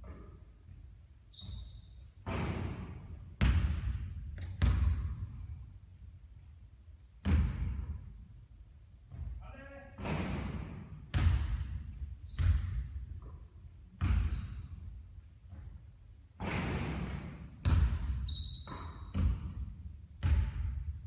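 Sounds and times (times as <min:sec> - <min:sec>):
short high squeaks: 0:01.3 - 0:02.1, 0:18.3 - 0:19.1
basketball bouncing: 0:02.2 - 0:05.4, 0:07.2 - 0:08.0, 0:10.0 - 0:11.8, 0:14.0 - 0:14.8, 0:16.4 - 0:21.0.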